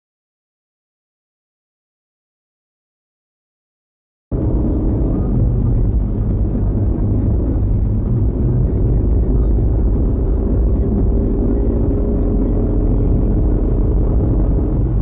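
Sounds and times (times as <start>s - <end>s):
car engine and road noise: 4.3s - 15.0s.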